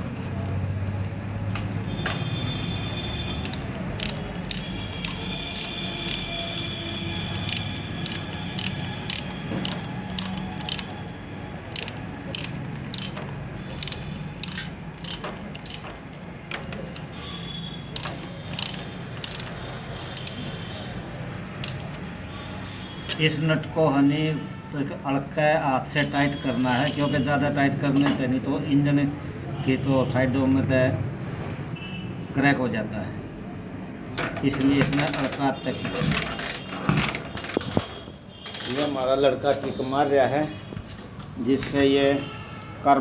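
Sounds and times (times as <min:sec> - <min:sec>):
ratchet wrench clicking: 0:01.6 - 0:20.8, 0:21.4 - 0:22.0.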